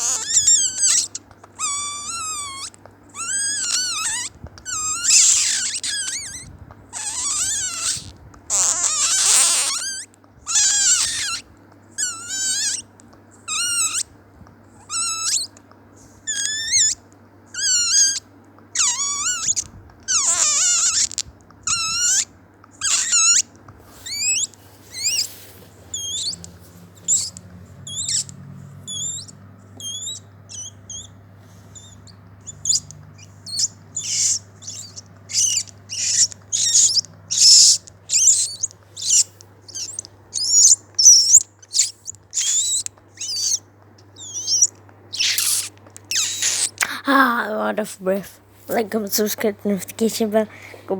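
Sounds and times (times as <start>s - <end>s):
person imitating dolphin squeaks: 0.0s - 6.4s, 7.0s - 11.4s, 12.0s - 12.8s, 13.5s - 14.0s, 14.8s - 15.5s, 16.3s - 17.0s, 17.6s - 18.2s, 18.8s - 25.3s, 25.9s - 26.4s, 27.1s - 27.3s, 27.9s - 28.3s, 28.9s - 31.1s, 31.8s - 32.9s, 33.5s - 43.6s, 44.2s - 48.2s.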